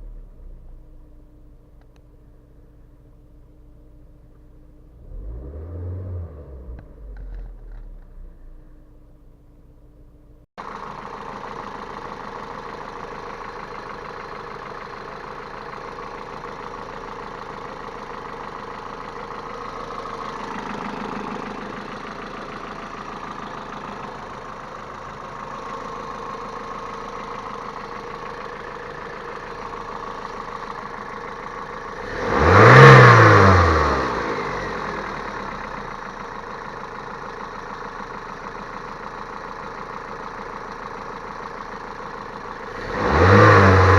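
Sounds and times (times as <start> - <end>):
car engine idling and revving: 0.0 - 43.9
engine knock: 10.6 - 43.7.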